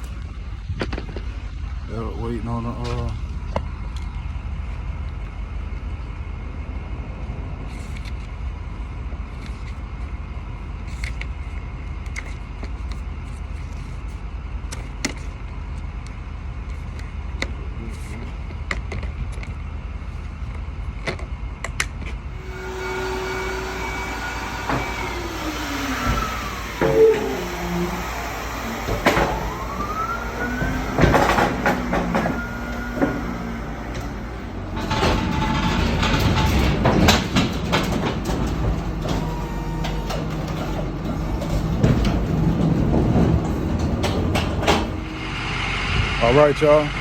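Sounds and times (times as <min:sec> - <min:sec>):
truck engine idling: 0:00.0 - 0:47.0
steady tones: 0:22.3 - 0:47.0.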